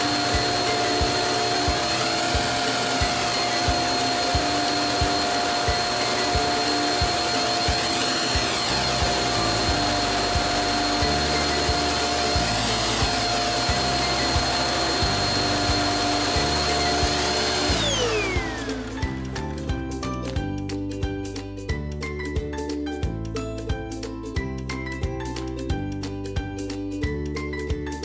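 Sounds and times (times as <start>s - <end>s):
stick vacuum motor whine: 0.0s - 19.8s.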